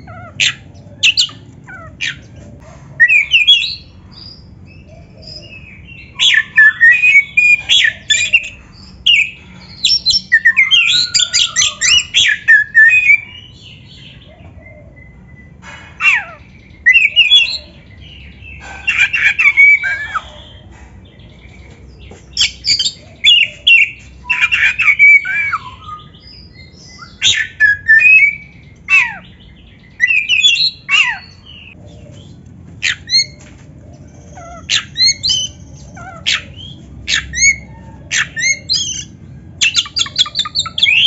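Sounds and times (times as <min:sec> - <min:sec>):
bird singing whistled phrases: 0:26.9 - 0:28.6.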